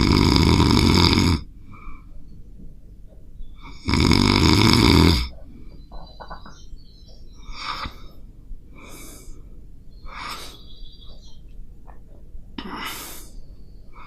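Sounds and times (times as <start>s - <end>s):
cat snoring: 0.0s - 1.5s, 3.6s - 5.3s.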